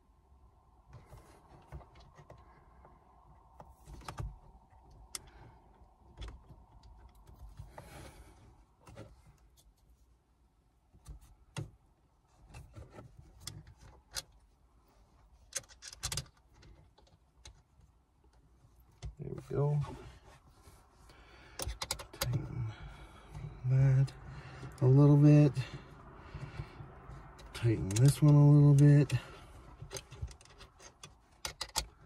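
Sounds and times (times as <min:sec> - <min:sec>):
small parts clicking and knocking: 0:15.4 - 0:19.2, 0:21.5 - 0:22.5, 0:27.4 - 0:32.0.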